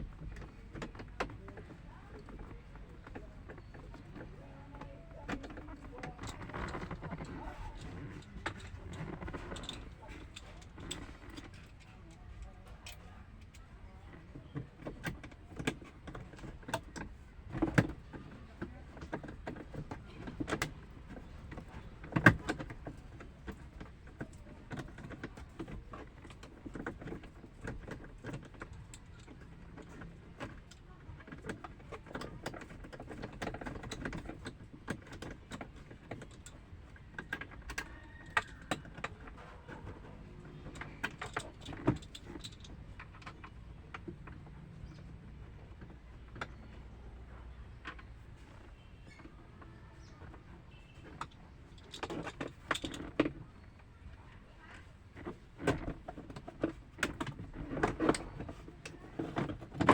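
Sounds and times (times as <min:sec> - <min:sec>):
hand tools and metal parts clinking: 0:14.4 - 0:46.8.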